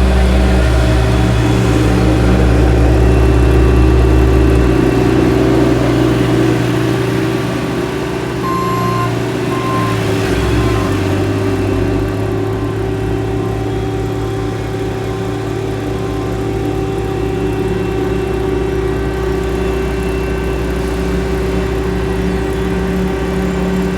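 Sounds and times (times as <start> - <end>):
diesel engine humming: 0.0 - 23.9
reversing beeper: 8.4 - 22.7.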